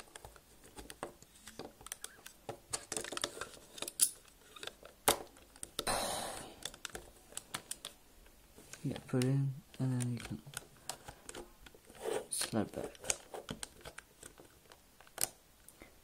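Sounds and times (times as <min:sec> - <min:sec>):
rustling scrape: 0:11.8 - 0:13.4.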